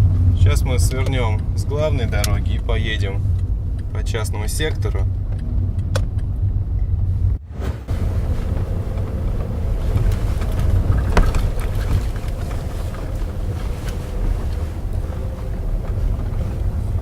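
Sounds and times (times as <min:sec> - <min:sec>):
road and tyre rumble: 0:00.0 - 0:17.0.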